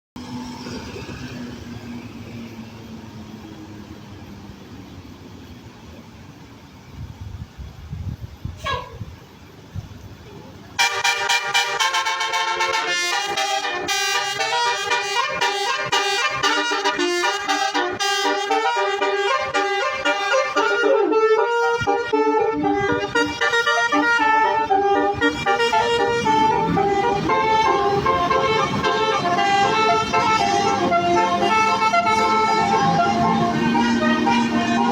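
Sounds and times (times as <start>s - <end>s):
bus multi-tone horn playing a tune: 8.6s - 9.1s, 10.8s - 34.9s.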